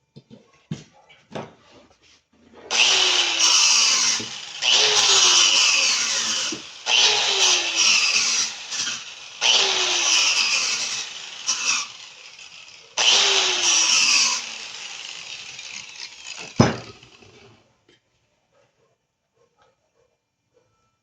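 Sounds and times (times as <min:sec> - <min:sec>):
handheld power tool running: 0:02.7 - 0:17.5.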